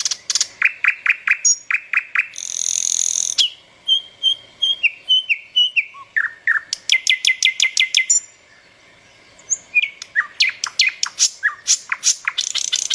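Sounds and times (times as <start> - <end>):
small birds chirping: 0.0 - 12.9.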